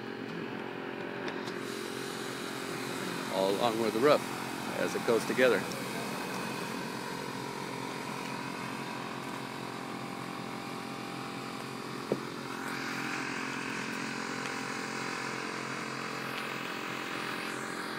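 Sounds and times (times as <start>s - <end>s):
steady mechanical drone: 0.0s - 17.9s
hissing rush: 1.6s - 10.9s.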